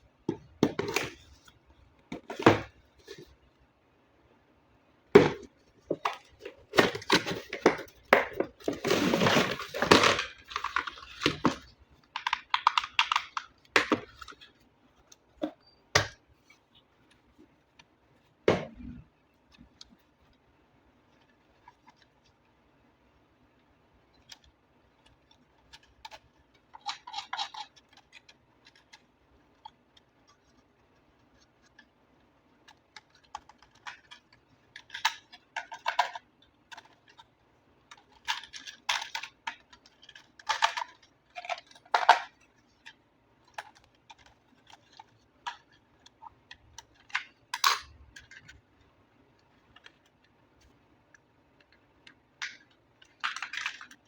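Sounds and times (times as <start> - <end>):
packaging rustling: 5.9 - 13.4.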